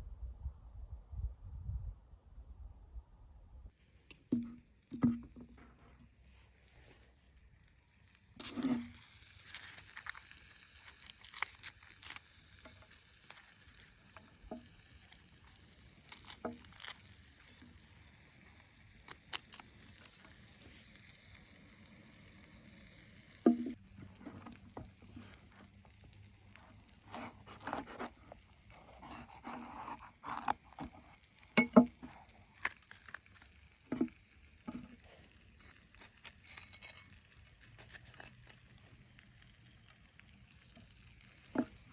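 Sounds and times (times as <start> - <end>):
food being handled: 8.1 - 21.0, 23.4 - 41.9.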